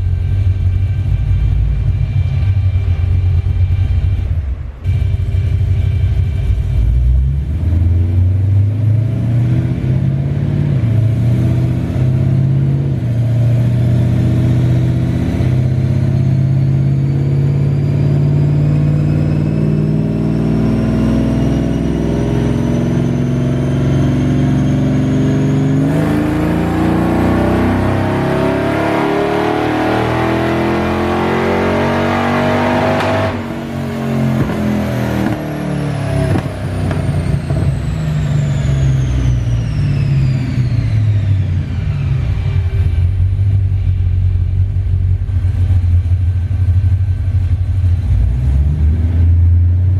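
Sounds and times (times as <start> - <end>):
engine revving under load: 4.8 - 43.2.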